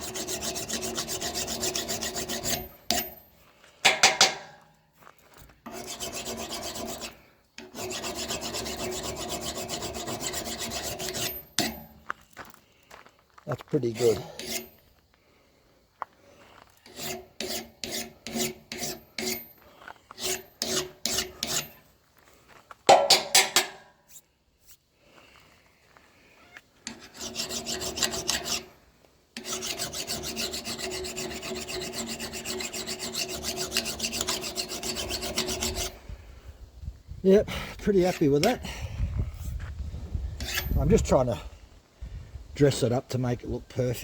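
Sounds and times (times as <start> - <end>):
file rasping on steel: 0.0 - 3.2, 5.6 - 12.0, 13.9 - 14.8, 16.8 - 21.8, 26.8 - 28.8, 29.4 - 36.0, 40.4 - 41.1.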